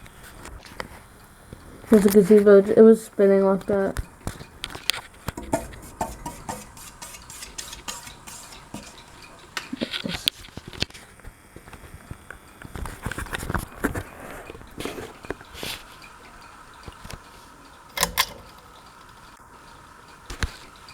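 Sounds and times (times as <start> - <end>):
objects being handled: 4.2 - 11.1.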